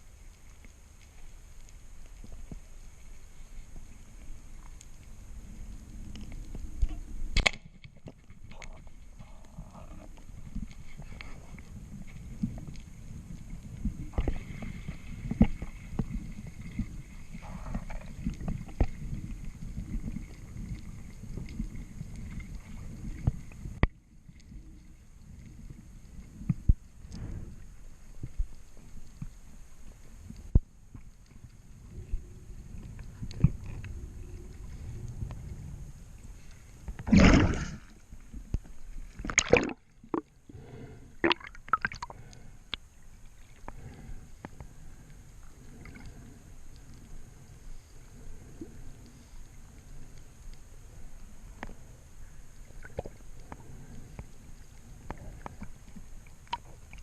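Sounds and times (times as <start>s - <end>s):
underwater rumble of moving water: 0.0s - 57.0s
sharp underwater clicks and knocks: 6.1s - 11.4s, 15.2s - 16.2s, 38.5s - 40.3s, 41.2s - 42.8s, 56.4s - 57.0s
water rushing and gurgling: 37.0s - 38.1s, 38.8s - 42.4s.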